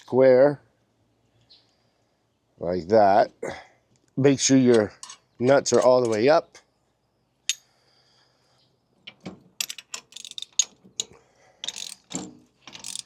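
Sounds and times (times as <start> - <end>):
ratchet wrench clicking: 9.6 - 13.0.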